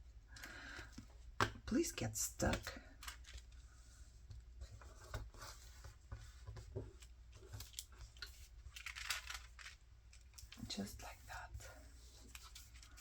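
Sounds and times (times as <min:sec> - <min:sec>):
paper rustling and tapping: 0:04.2 - 0:10.9.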